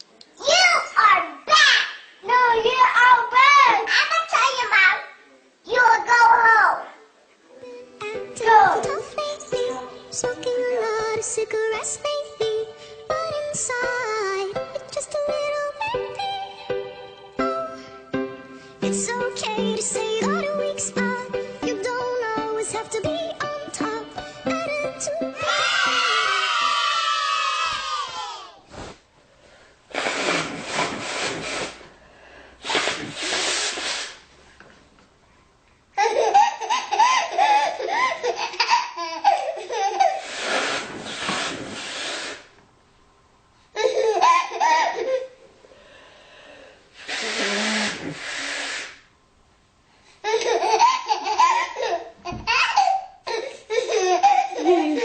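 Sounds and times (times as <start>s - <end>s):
woman blowing her nose: 28.7s - 29.0s, 29.9s - 32.0s, 32.6s - 34.3s, 40.1s - 42.6s, 46.9s - 49.1s
baby giggling: 36.0s - 40.7s, 43.8s - 45.3s, 50.2s - 55.0s.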